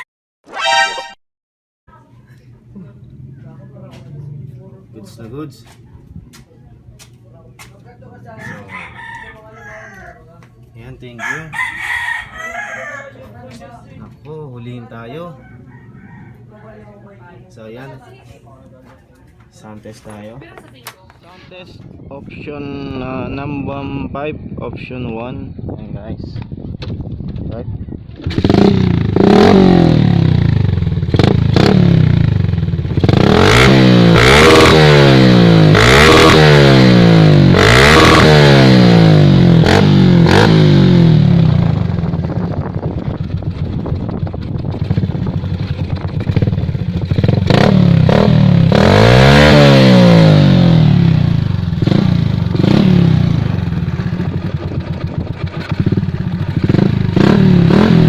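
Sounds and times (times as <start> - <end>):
motorcycle engine revving: 28.0 - 58.0.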